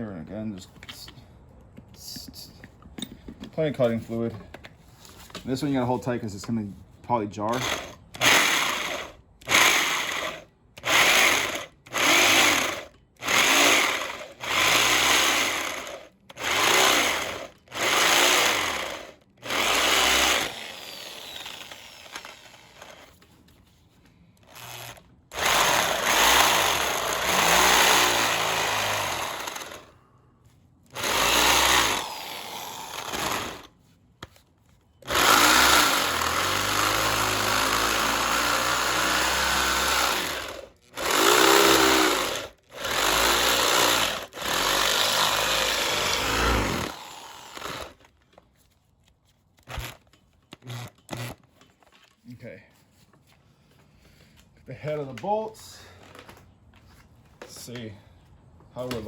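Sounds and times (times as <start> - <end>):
electric drill boring into metal: 7.5 - 23.1, 24.5 - 29.9, 30.9 - 33.7, 35.0 - 48.1, 49.7 - 50.0, 50.6 - 51.4.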